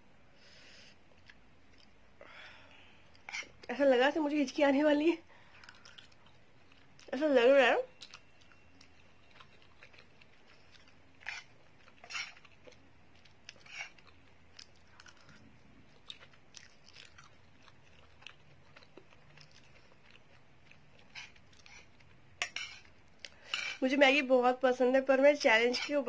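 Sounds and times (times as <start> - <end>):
person chewing noodles: 5.4 - 7.1, 7.9 - 23.6.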